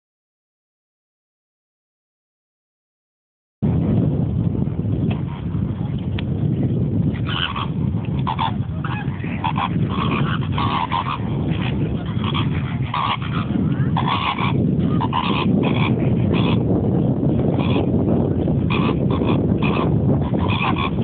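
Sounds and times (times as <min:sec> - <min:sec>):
steady low rumble: 0:03.6 - 0:21.0
flamingos honking: 0:07.1 - 0:16.7, 0:17.5 - 0:21.0.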